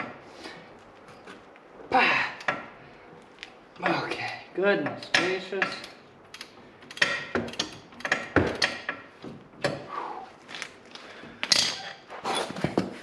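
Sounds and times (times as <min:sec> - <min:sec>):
hand tools clanking on metal: 0:03.8 - 0:09.9.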